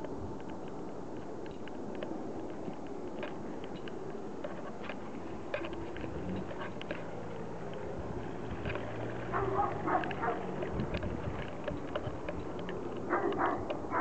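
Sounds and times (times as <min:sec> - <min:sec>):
steady low drone: 0:00.0 - 0:14.0
dog barking: 0:09.3 - 0:10.5, 0:13.1 - 0:14.0.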